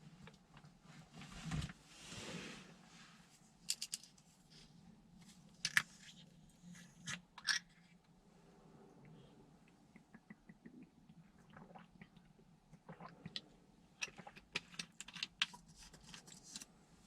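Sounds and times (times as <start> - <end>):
soft rustle: 0.1 - 6.8.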